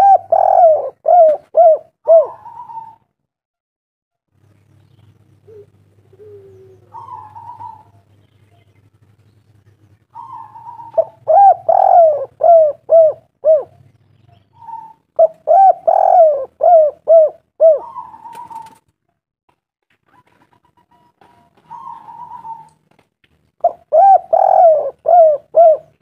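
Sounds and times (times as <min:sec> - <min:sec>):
dove cooing: 0:00.0 - 0:03.1, 0:05.4 - 0:08.7, 0:10.1 - 0:18.8, 0:20.1 - 0:22.9, 0:23.6 - 0:26.0.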